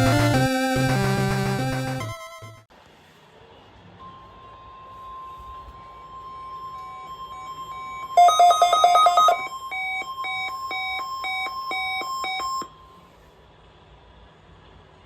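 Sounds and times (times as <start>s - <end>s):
steady alarm tone: 4.8s - 13.0s
alert receiver beeping: 6.3s - 12.8s.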